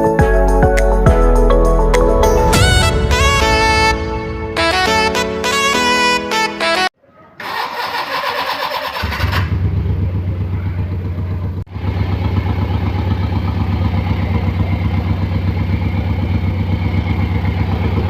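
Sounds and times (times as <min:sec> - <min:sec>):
music: 0:00.0 - 0:06.9
car engine idling: 0:09.2 - 0:18.0.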